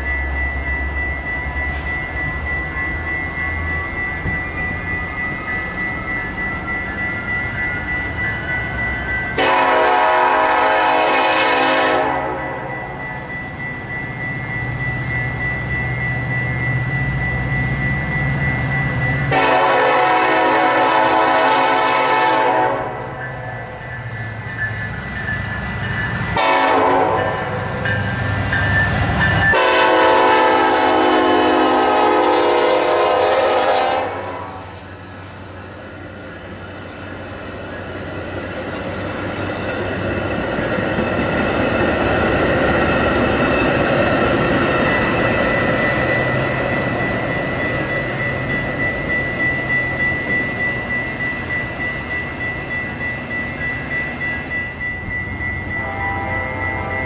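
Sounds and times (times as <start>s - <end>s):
train rumbling past: 0.0s - 57.0s
train air horn blasts: 9.4s - 12.7s, 19.3s - 23.2s, 26.4s - 27.6s, 29.5s - 34.7s, 55.8s - 57.0s.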